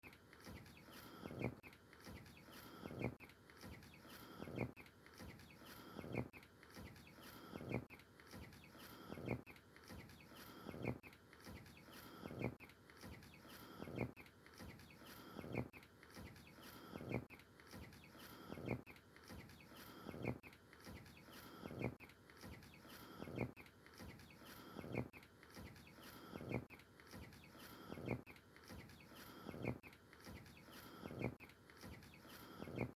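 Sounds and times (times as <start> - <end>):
young farm birds clucking: 0.4 - 32.9.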